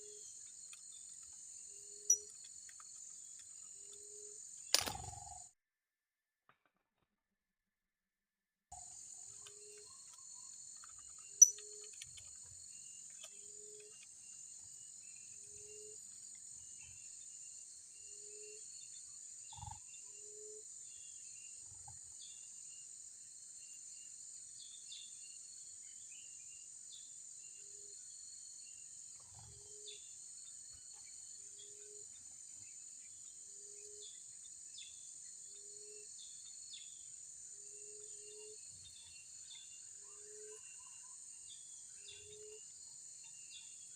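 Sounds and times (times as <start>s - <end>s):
bird chirps: 0.0s - 5.5s, 9.3s - 14.4s, 37.8s - 43.9s
insect chorus drone: 0.0s - 5.5s, 8.8s - 43.9s
sharp click: 4.7s - 5.3s.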